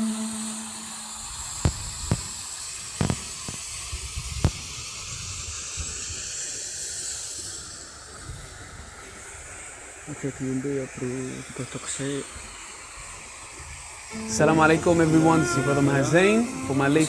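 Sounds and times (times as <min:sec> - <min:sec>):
waterfall rushing: 0:14.1 - 0:17.0.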